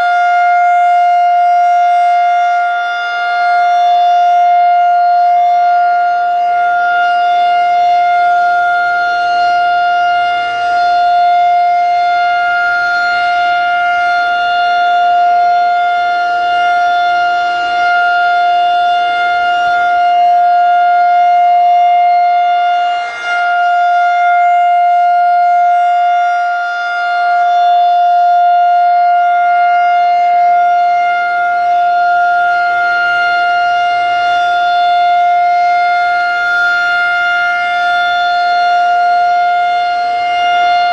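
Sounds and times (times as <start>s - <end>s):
outdoor warning siren steady tone: 0.0s - 40.9s.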